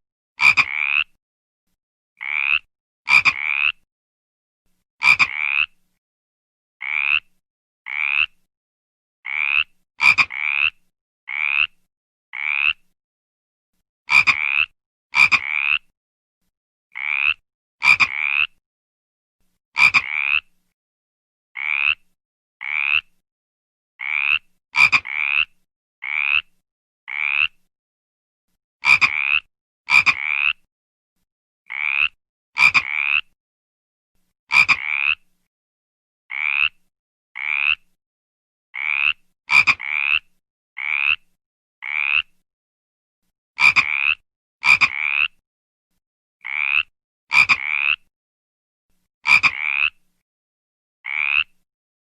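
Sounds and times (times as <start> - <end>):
frog croaking: 0.4 - 1.2, 2.2 - 3.8, 5.0 - 5.8, 6.8 - 7.3, 7.9 - 8.4, 9.3 - 11.8, 12.4 - 12.8, 14.1 - 15.9, 17.0 - 18.6, 19.8 - 20.5, 21.6 - 22.0, 22.6 - 23.1, 24.0 - 26.5, 27.1 - 27.6, 28.8 - 30.6, 31.7 - 33.3, 34.5 - 35.2, 36.3 - 36.8, 37.4 - 37.8, 38.8 - 40.2, 40.8 - 41.2, 41.8 - 42.3, 43.6 - 45.3, 46.4 - 48.0, 49.3 - 50.0, 51.0 - 51.6.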